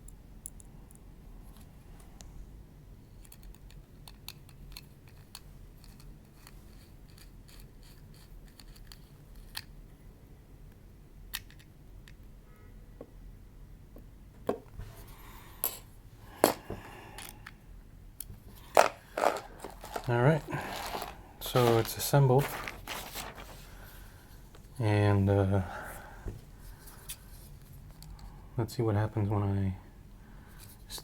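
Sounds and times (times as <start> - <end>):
small screwdriver ticks and scrapes: 4.7 - 9.7.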